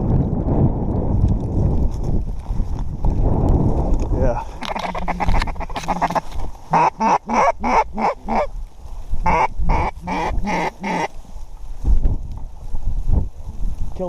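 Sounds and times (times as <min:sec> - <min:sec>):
duck quacking: 0:04.6 - 0:08.5, 0:09.2 - 0:11.1.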